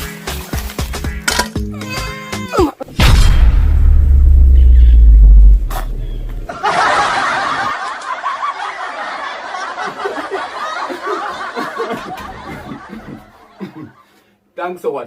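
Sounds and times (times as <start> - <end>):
deep rumbling sound effect: 3.0 - 6.5
laugh track: 6.4 - 14.2.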